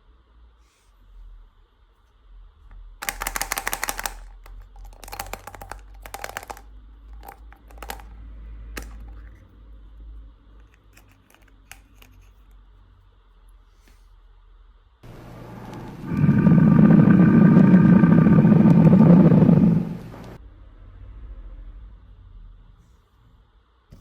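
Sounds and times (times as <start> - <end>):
clicks and rustles: 3.0 - 8.2, 8.8 - 9.4, 10.6 - 12.6.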